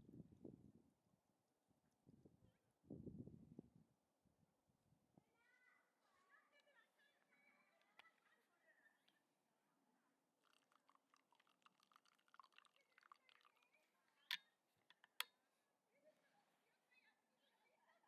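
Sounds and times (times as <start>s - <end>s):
faint crackling and clicking: 6.5s - 9.3s, 10.4s - 15.4s
sharp clicks: 14.3s - 15.3s.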